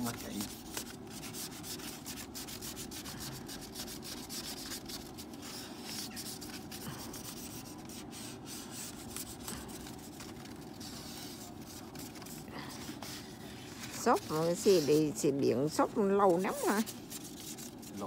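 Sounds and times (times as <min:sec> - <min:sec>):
ice scraping off car window: 0:13.2 - 0:17.1.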